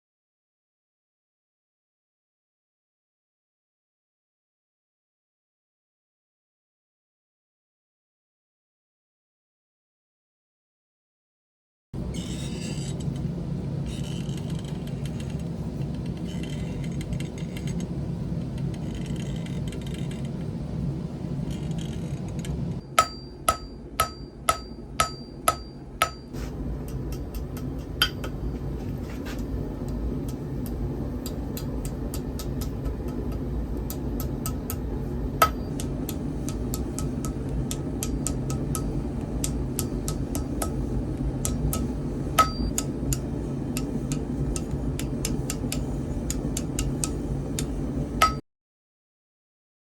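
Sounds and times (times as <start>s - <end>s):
hammer ringing on anvil: 23.0s - 26.3s, 28.0s - 28.4s, 35.4s - 35.7s, 42.4s - 42.8s.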